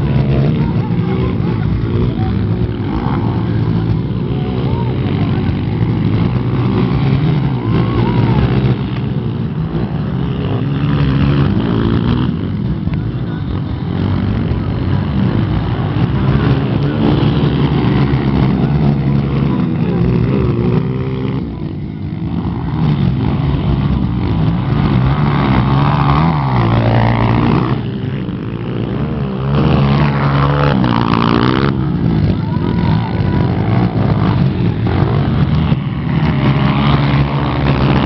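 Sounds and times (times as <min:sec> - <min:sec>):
motocross engines revving: 0:00.0 - 0:38.0.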